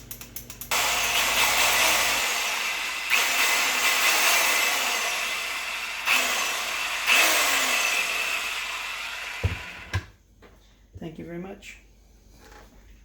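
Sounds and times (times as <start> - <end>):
sheet-metal saw whining: 0.7 - 10.0.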